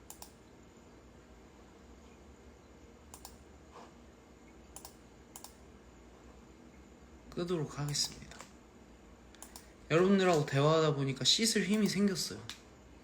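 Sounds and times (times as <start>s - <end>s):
faint short clicks: 3.1s - 3.4s, 4.8s - 5.6s, 9.3s - 9.7s.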